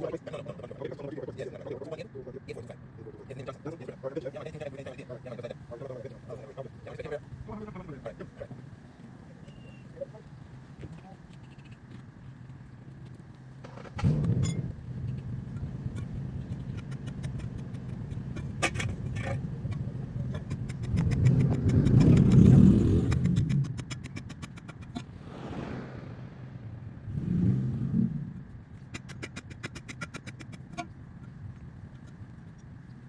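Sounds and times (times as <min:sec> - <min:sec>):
rapid light clicking: 0:15.9 - 0:19.0, 0:19.7 - 0:25.0, 0:28.8 - 0:30.9.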